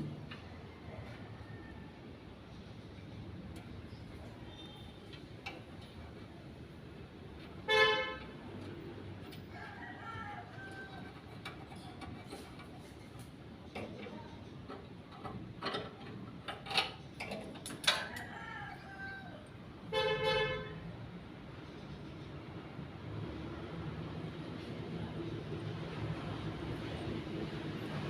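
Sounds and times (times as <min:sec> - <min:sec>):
vehicle horn honks: 0:07.7 - 0:08.2, 0:19.9 - 0:20.8.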